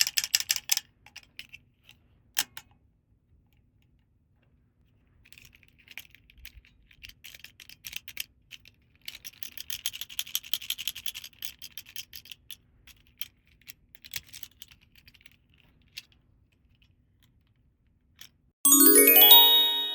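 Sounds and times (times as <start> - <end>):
bright bell-like chime: 18.7 - 19.9.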